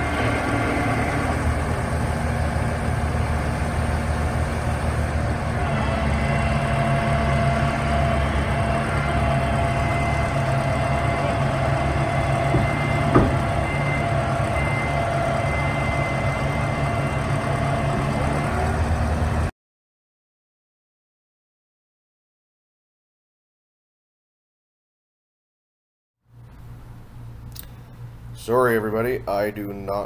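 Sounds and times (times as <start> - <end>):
excavator engine running: 0.0 - 19.5.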